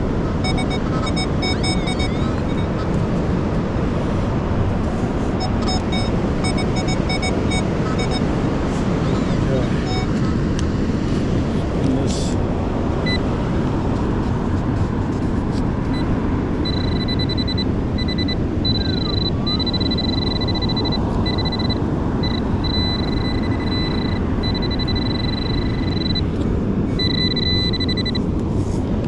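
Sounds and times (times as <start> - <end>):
metal detector high tone: 0.4 - 2.7, 5.4 - 8.3, 9.0 - 10.3, 16.6 - 26.4, 27.0 - 28.2.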